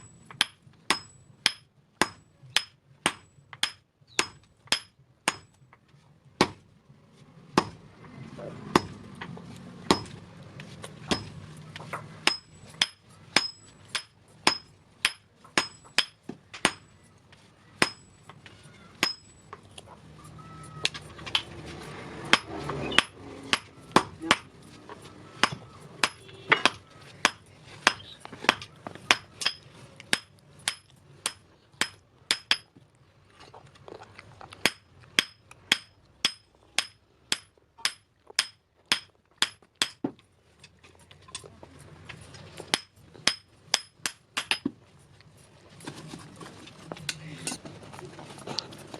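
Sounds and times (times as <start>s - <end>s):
hammer striking steel on anvil: 0.0s - 5.6s, 8.7s - 9.0s, 9.9s - 10.2s, 11.1s - 11.4s, 12.2s - 16.9s, 17.8s - 18.4s, 19.0s - 19.6s, 22.3s - 24.5s, 25.4s - 32.7s, 34.6s - 40.1s, 42.7s - 44.7s.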